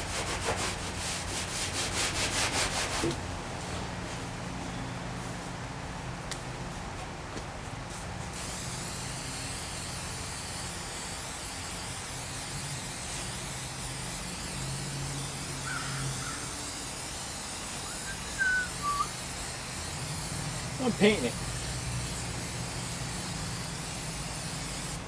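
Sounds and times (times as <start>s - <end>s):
steady hiss: 8.5s - 25.0s
bird chirps: 17.8s - 19.2s.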